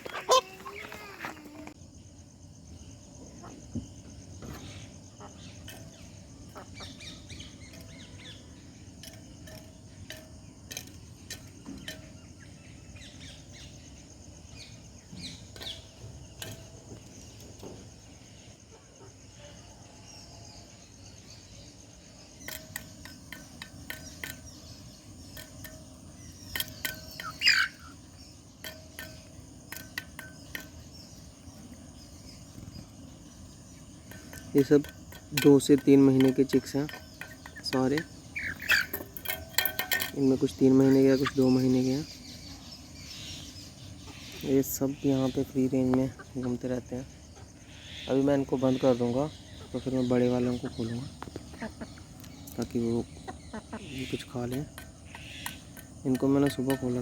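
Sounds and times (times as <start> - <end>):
insect drone: 0.0 - 57.0
chicks chirping: 22.5 - 34.9, 36.0 - 39.6, 40.2 - 47.5, 48.1 - 57.0.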